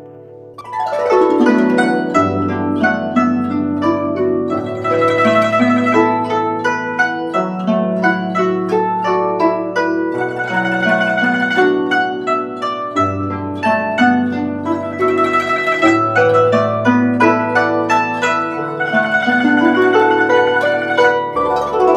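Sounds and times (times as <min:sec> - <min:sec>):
plucked zither melody: 0:00.0 - 0:21.9.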